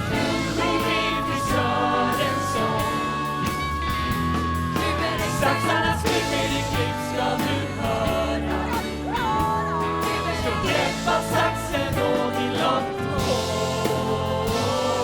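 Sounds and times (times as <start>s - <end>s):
gospel choir with band: 0.0s - 15.0s.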